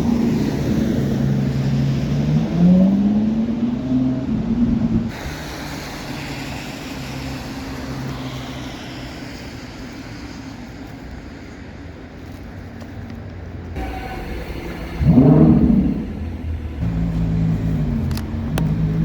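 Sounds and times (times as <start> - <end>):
tyre and road noise: 0.0 - 19.0
car engine running at low revs: 13.8 - 19.0.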